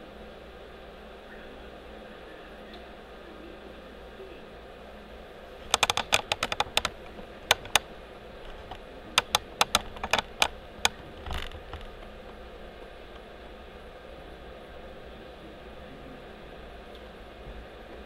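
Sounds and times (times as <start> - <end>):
steady background hiss: 0.0 - 18.0
sharp light keyboard-like clicks: 5.7 - 11.8.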